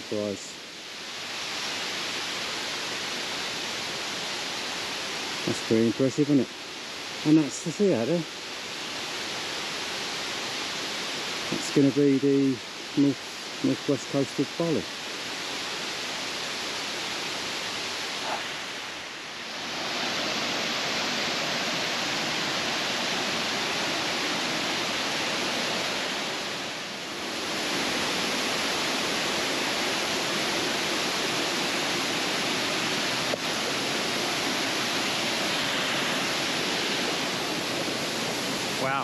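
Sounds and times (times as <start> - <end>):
waterfall rushing: 0.0 - 39.0.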